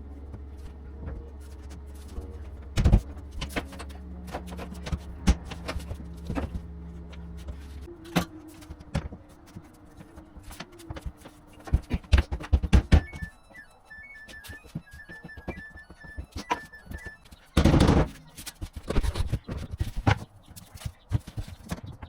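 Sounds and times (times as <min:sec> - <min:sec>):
low steady hum: 0:00.0 - 0:20.1.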